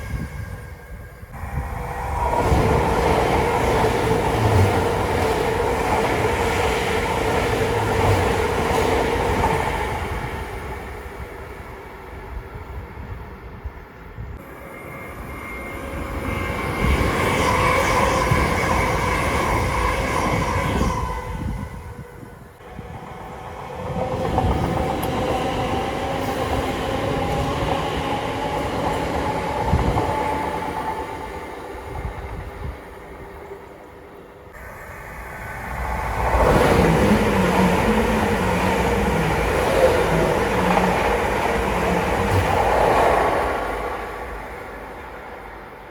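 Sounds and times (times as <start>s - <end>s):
train wheels rumbling on track: 0.0s - 12.8s, 14.3s - 33.8s, 34.4s - 45.9s.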